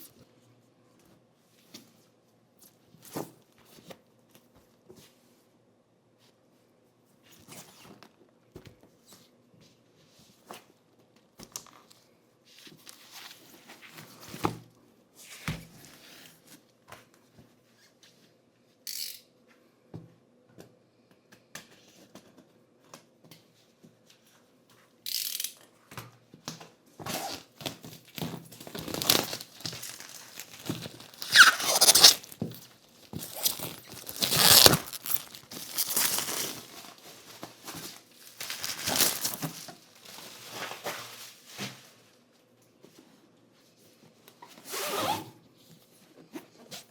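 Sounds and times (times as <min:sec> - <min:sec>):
packaging crinkling and tearing: 0:27.3 - 0:41.5
packaging taps and rustles: 0:27.3 - 0:41.8
squeaks: 0:31.0 - 0:32.4.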